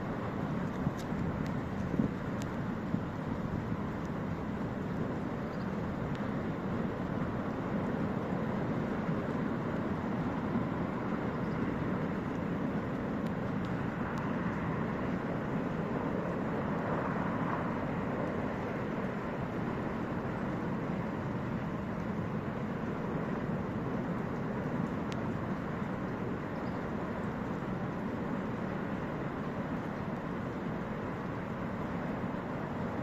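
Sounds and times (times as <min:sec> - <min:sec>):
rushing floodwater: 0:00.0 - 0:33.0.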